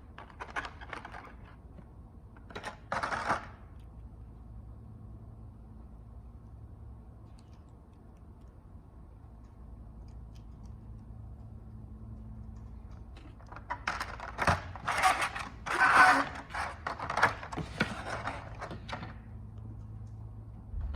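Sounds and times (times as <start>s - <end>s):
plastic clicks and scraping: 0.0s - 3.9s, 12.5s - 19.2s
low steady hum: 0.0s - 20.9s.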